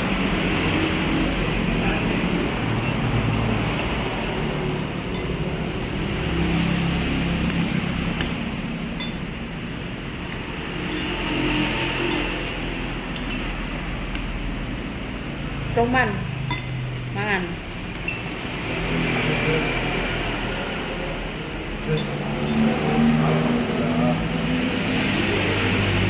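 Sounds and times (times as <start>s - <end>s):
spoon clinking on dishware: 9.0s - 9.3s, 13.1s - 14.4s, 16.4s - 17.0s, 21.8s - 22.8s.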